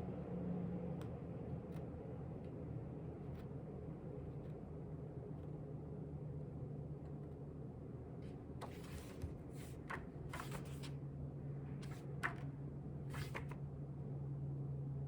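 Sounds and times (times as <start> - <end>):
low electrical hum: 0.0 - 15.0
book pages turning: 8.6 - 11.0, 11.8 - 12.5, 13.1 - 13.6
paper rustling: 8.6 - 11.0, 11.8 - 12.4, 13.1 - 13.6.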